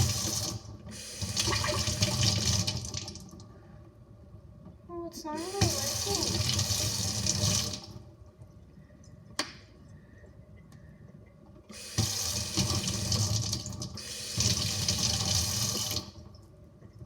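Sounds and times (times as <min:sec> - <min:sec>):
tap water pouring: 0:00.0 - 0:03.5, 0:05.4 - 0:08.1, 0:11.7 - 0:16.3.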